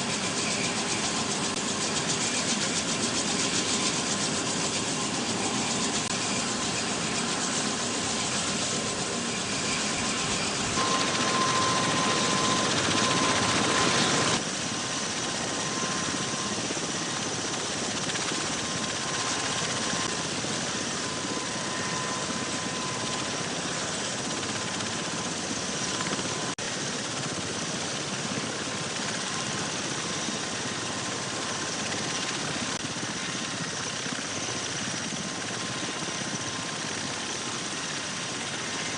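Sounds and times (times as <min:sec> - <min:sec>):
rotor and engine noise: 0:00.0 - 0:26.5
thin turbine whine: 0:00.0 - 0:38.9.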